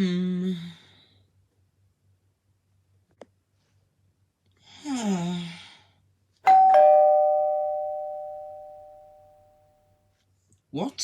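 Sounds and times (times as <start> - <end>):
two-tone doorbell ringing: 6.5 - 9.2.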